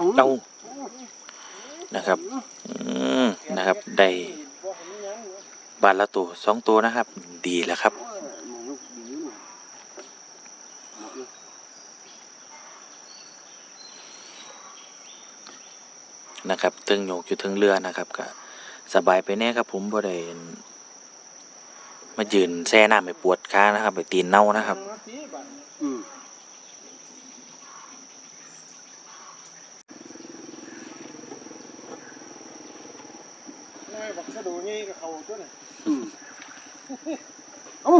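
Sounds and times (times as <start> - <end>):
insects droning: 0.0 - 37.9
faint murmurs: 0.6 - 5.5, 25.8 - 26.3.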